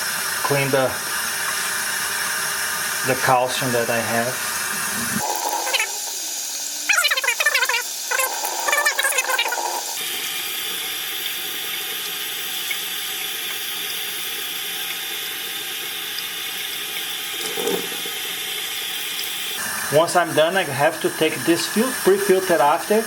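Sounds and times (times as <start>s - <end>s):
tap water running into sink: 0.0s - 23.0s.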